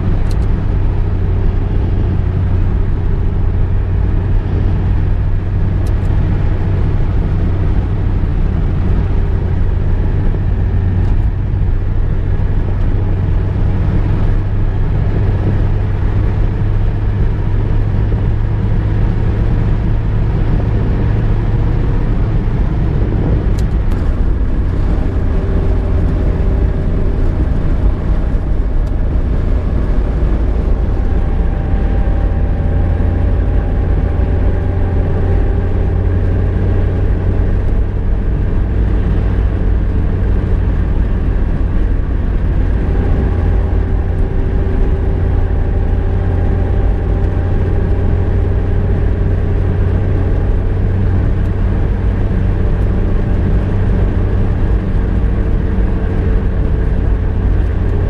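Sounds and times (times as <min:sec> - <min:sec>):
car engine and road rumble: 0:00.0 - 0:58.0
faint engine tones: 0:00.0 - 0:58.0.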